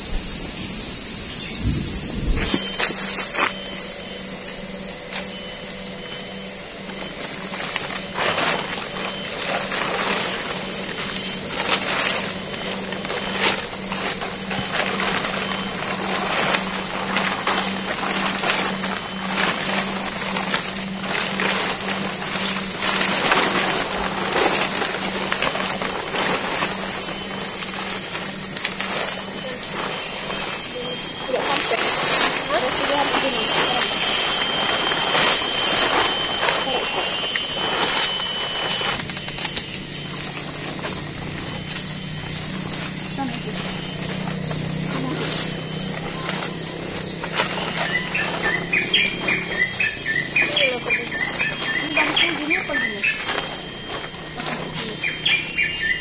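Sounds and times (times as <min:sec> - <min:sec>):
high-pitched whine: 0:00.0 - 0:56.0
heavy rain on a tent: 0:07.6 - 0:29.0, 0:31.6 - 0:42.4.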